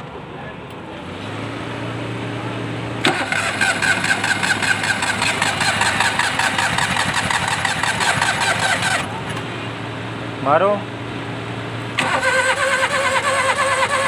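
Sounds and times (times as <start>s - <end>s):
car engine cranking: 3.0s - 9.5s, 11.9s - 14.0s.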